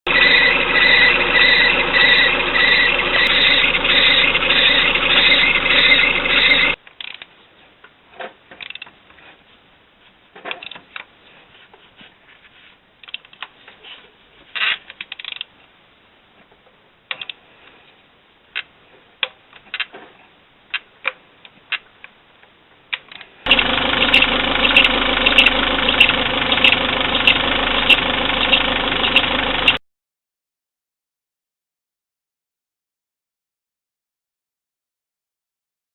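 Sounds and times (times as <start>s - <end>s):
car engine running with rhythmic pulsing: 0.1s - 6.8s, 23.5s - 29.8s.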